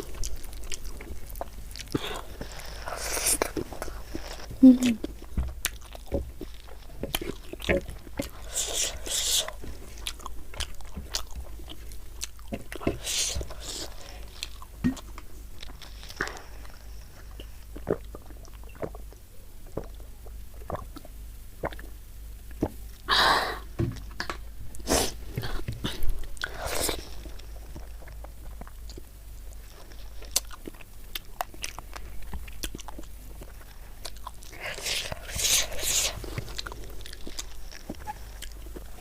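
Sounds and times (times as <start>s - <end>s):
chewing food: 0.0s - 23.0s, 25.2s - 39.0s.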